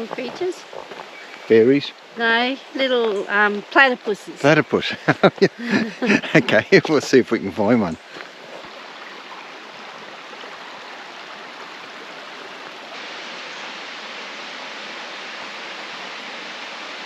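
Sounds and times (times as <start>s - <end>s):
flowing water rushing: 0.0s - 17.0s.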